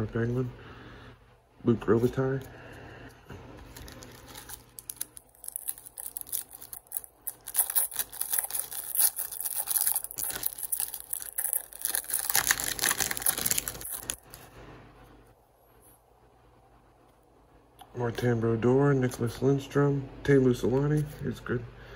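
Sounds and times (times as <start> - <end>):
foil wrapper tearing and crinkling: 3.7 - 14.4.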